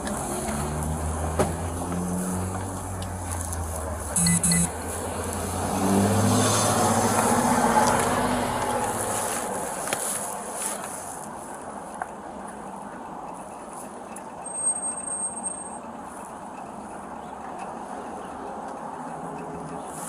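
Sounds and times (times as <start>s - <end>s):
motor vehicle running: 0.0s - 20.0s
short electronic beeps: 4.2s - 4.7s.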